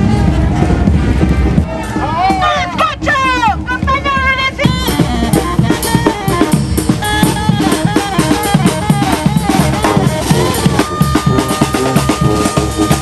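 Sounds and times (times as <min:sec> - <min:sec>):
snare and bass drum beat: 0:00.6 - 0:13.0
brass melody notes: 0:04.6 - 0:13.0.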